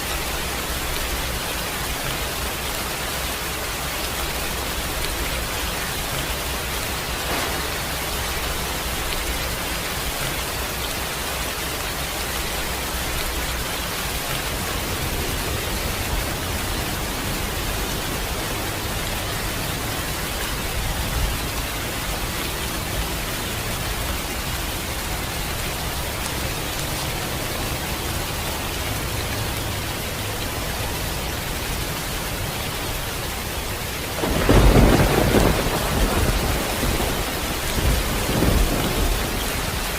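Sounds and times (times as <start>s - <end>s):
steady rain falling: 0.0s - 39.9s
loud thunder clap: 7.1s - 9.1s, 34.2s - 39.5s.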